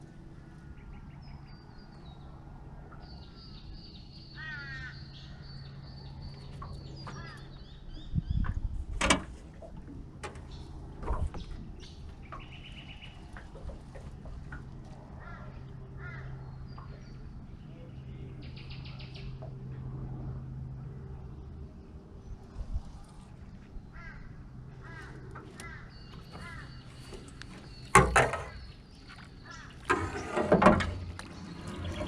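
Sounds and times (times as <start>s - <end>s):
birds chirping and calling: 3.0s - 8.8s, 10.4s - 14.1s, 23.8s - 32.0s.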